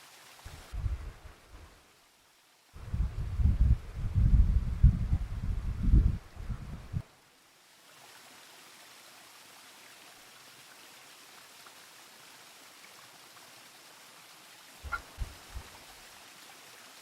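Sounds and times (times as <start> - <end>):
river flowing: 0.0 - 2.8, 7.1 - 17.0.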